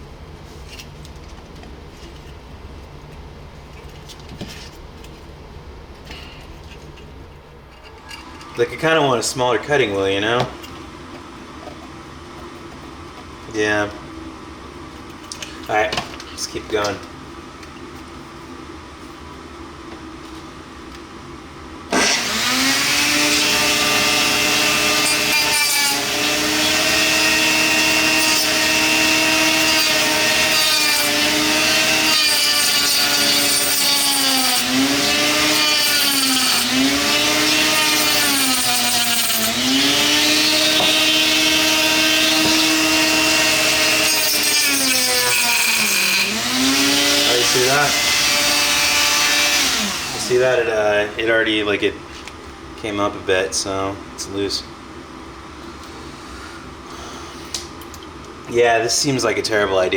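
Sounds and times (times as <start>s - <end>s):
rotary tool cutting plastic: 21.9s - 50.4s.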